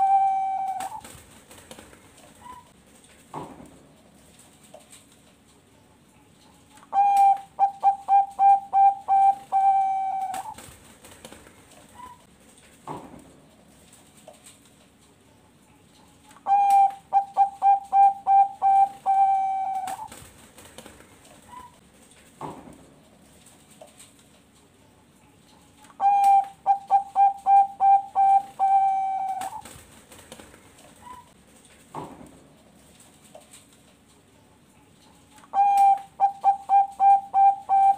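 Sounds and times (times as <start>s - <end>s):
dove cooing: 0.0s - 1.1s, 6.9s - 10.6s, 16.4s - 20.1s, 26.0s - 29.7s, 35.5s - 37.9s.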